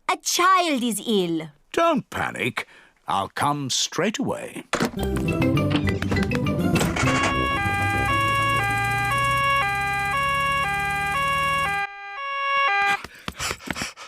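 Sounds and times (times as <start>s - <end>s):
cartoon siren two-tone nee-naw: 6.8s - 13.0s
steady engine hum: 6.9s - 11.9s.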